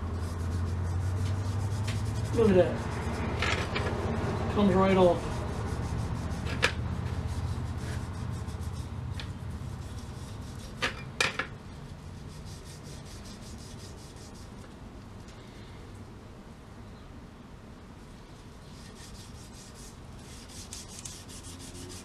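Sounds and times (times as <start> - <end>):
scouring pad scrubbing: 0.0 - 4.0, 4.6 - 9.1, 18.7 - 22.0.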